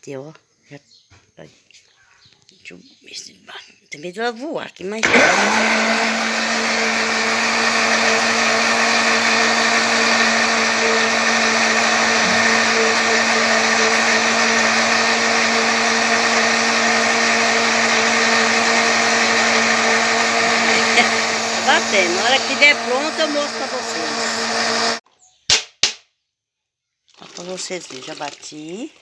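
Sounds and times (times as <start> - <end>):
electric blender running: 5.0 - 25.0.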